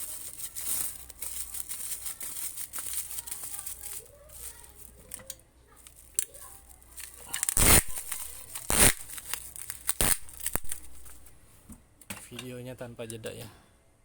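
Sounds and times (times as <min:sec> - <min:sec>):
packing material tearing: 0:00.0 - 0:05.2, 0:05.8 - 0:11.4
faint rustling: 0:00.0 - 0:11.7.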